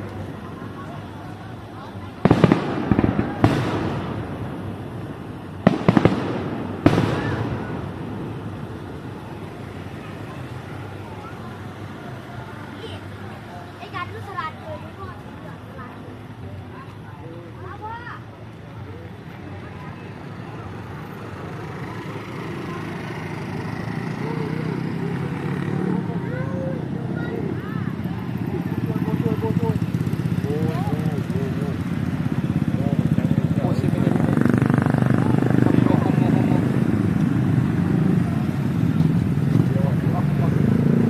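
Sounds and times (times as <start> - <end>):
crowd talking: 0.0 - 41.0
fireworks bangs with echo: 1.7 - 11.9.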